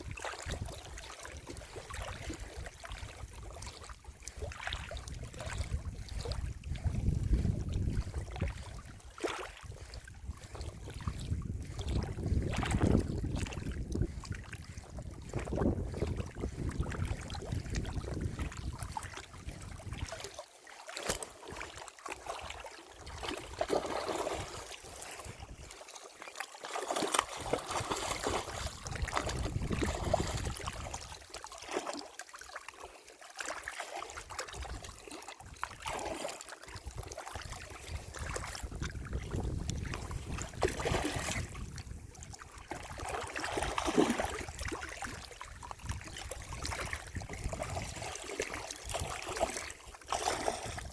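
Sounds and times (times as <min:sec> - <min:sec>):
water lapping and splashing: 0:00.0 - 0:50.9
wind buffeting microphone: 0:04.3 - 0:09.0, 0:09.6 - 0:20.2, 0:27.4 - 0:31.2, 0:36.8 - 0:48.2.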